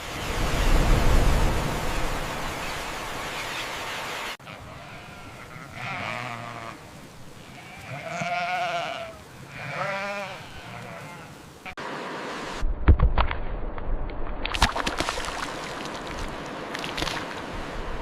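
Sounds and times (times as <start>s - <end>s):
farm animals bleating: 4.4s - 11.8s.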